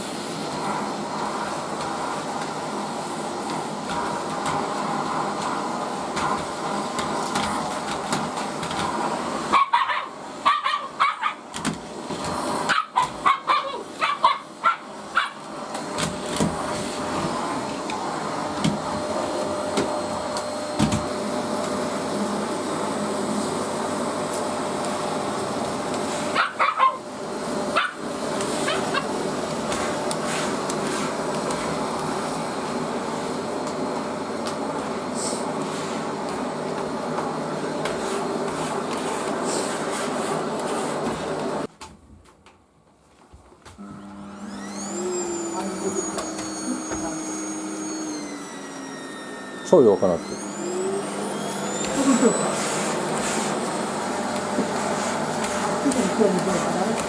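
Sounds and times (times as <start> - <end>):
vacuum cleaner running: 0.0 - 41.7, 43.1 - 57.0
puppy barking and yipping: 9.5 - 11.5, 12.7 - 15.4, 26.3 - 27.1, 27.7 - 28.0, 28.6 - 29.1.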